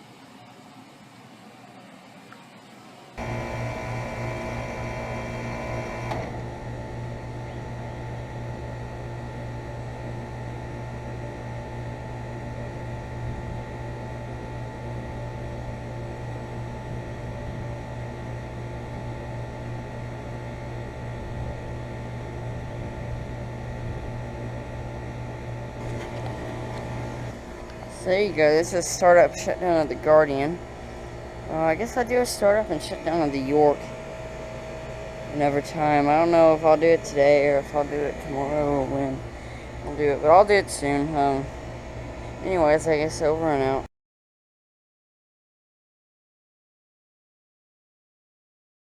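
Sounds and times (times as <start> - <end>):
air conditioner low hum: 0.0 - 43.9
high-pitched whine: 25.8 - 41.6.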